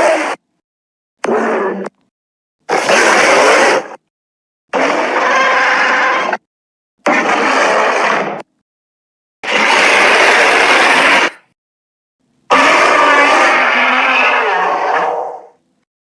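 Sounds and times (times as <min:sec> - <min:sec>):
monster roars: 0:02.7 - 0:04.0, 0:12.5 - 0:15.6.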